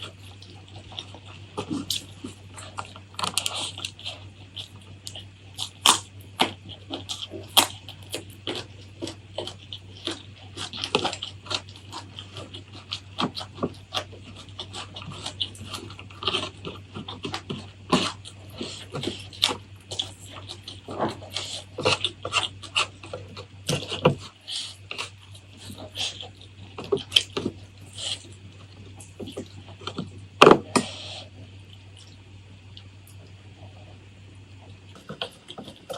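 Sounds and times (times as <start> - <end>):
chewing crunches and mouth smacks: 0.0 - 35.9
faint low hum: 0.0 - 35.9.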